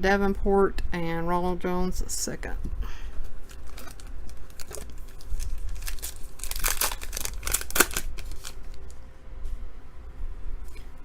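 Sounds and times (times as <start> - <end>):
wrapper tearing and crinkling: 3.4 - 9.0.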